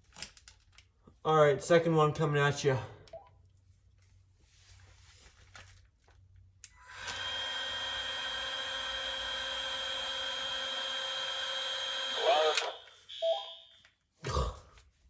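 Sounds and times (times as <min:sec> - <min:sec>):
faint clicks and rustles: 0:03.6 - 0:06.5
heat gun fan whining: 0:06.7 - 0:13.2.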